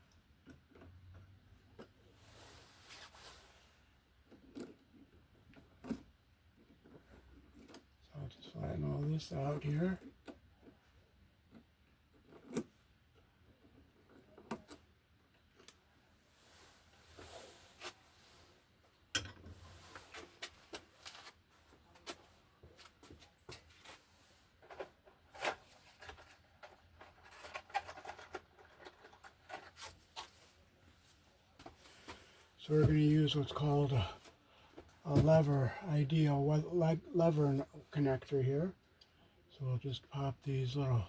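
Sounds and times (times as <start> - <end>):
electrical wires clicking and rubbing: 19.1 - 30.4.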